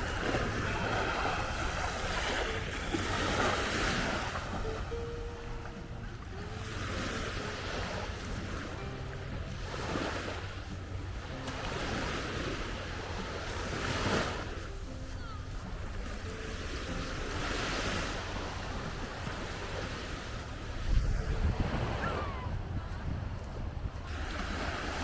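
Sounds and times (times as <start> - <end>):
waves breaking on beach: 0.0 - 25.0
wind on microphone: 20.4 - 25.0.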